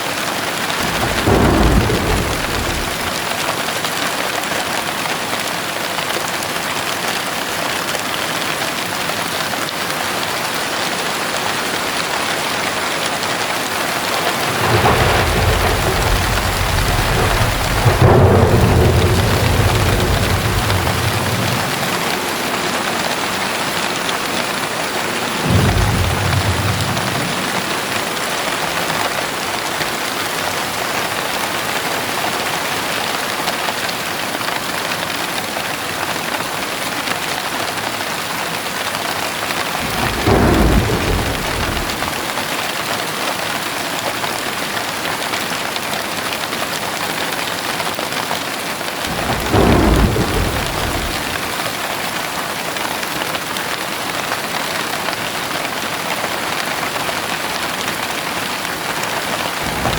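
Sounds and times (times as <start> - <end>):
heavy rain falling: 0.0 - 59.9
low rumbles of thunder: 0.8 - 3.4, 14.0 - 29.4, 39.6 - 42.4, 49.0 - 52.0, 59.4 - 59.9.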